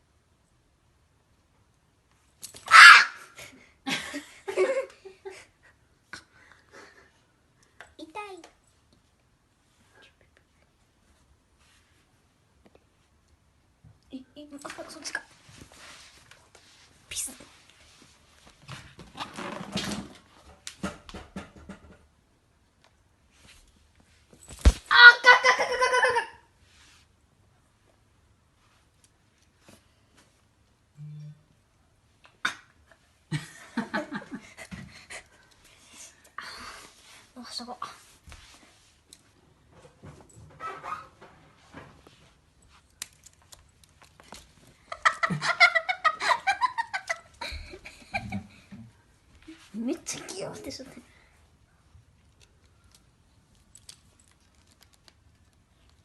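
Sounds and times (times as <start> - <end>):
kitten crying: 2.7 - 3.2.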